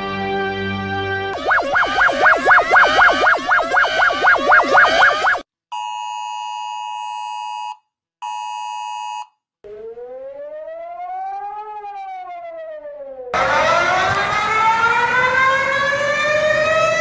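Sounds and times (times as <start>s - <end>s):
rising and falling siren tone: 1.4s - 5.4s, 9.6s - 17.0s
two-tone attention signal: 1.4s - 5.4s.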